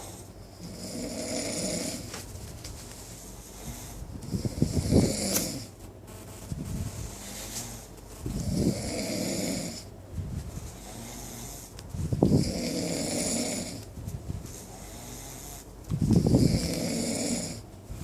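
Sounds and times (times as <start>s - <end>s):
loud snores: 0.0s - 2.1s, 3.6s - 5.7s, 7.1s - 9.9s, 10.8s - 13.8s, 14.8s - 17.6s
quiet breathing: 2.9s - 5.7s, 6.9s - 18.0s.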